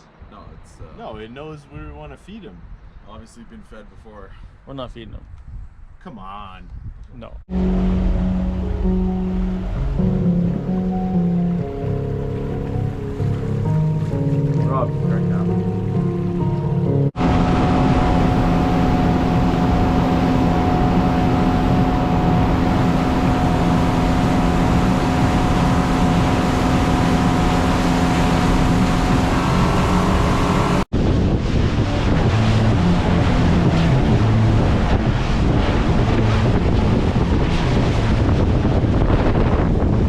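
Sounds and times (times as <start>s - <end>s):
wind buffeting microphone: 0.2s - 4.0s, 5.0s - 10.0s, 17.2s - 40.0s
motorboat engine droning: 7.5s - 40.0s
rushing water: 7.5s - 40.0s.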